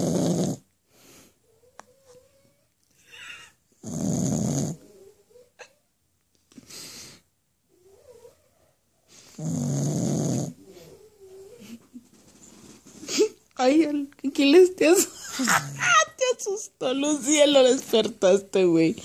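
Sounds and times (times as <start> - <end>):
dog snoring: 0.0 - 0.7, 3.8 - 5.5, 9.3 - 11.6.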